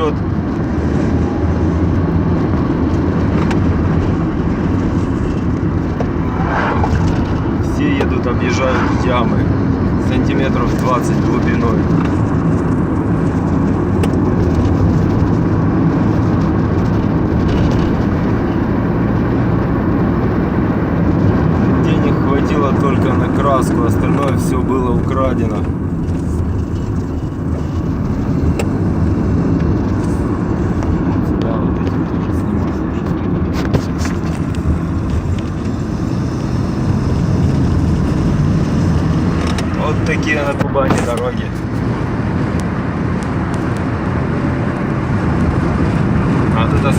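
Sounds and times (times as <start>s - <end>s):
car engine and tyres rumbling: 0.0s - 46.9s
sharp knocks from potholes: 40.4s - 41.4s.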